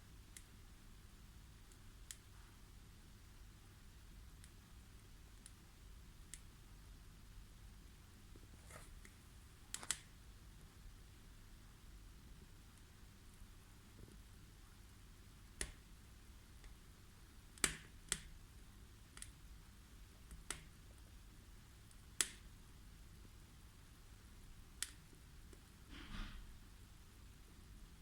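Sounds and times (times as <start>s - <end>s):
wood fire crackling in stove: 0.0s - 28.0s.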